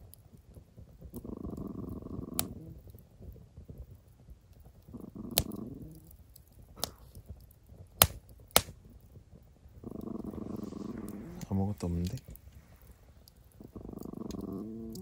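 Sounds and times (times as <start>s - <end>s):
campfire crackling and popping: 0.0s - 15.0s
dog growling low: 1.1s - 3.0s, 4.8s - 7.2s, 9.8s - 15.0s.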